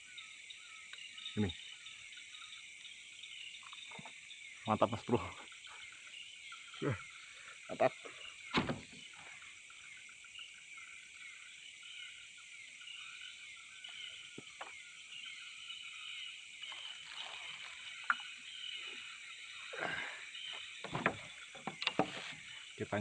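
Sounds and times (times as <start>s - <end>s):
high chirping of night animals: 0.0s - 23.0s
faint clicks and rustles: 16.6s - 18.6s.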